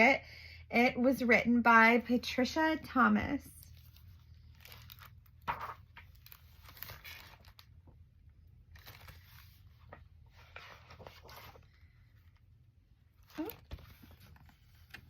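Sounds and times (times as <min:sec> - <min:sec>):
book pages rustling: 0:03.7 - 0:15.0.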